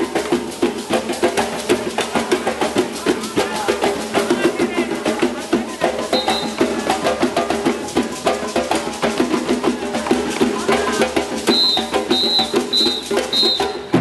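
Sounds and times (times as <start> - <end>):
percussion-led folk music: 0.0 - 14.0
wood-block clacking: 0.0 - 14.0.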